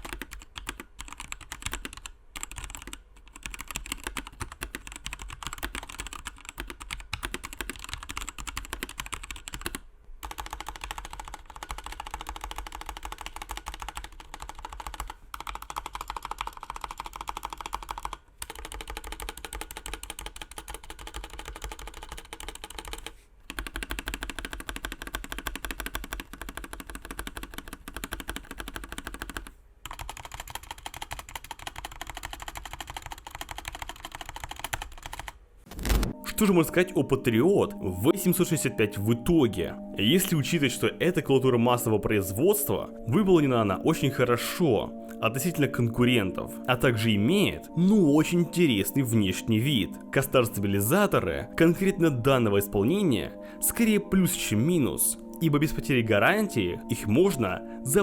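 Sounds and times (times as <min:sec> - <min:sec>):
mechanical keyboard typing: 0:00.0 - 0:37.2.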